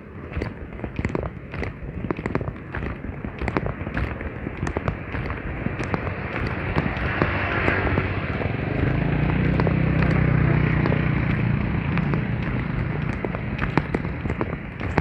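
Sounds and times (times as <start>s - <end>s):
crackling noisy background: 0.0s - 15.0s
vehicle engine passing: 0.0s - 15.0s.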